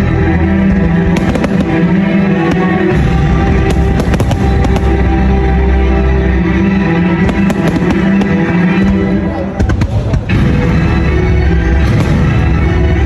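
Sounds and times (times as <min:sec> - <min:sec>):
fireworks bangs and crackles: 0:00.0 - 0:13.0
loud music: 0:00.0 - 0:13.0.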